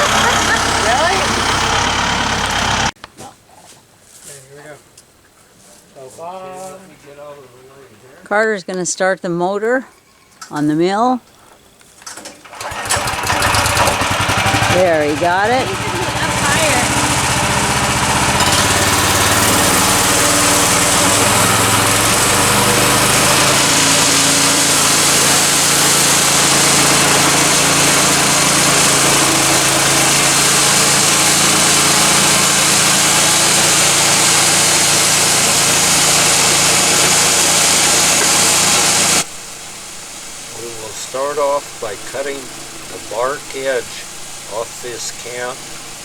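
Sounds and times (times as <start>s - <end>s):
gasoline engine running: 0.0s - 3.0s, 12.4s - 46.0s.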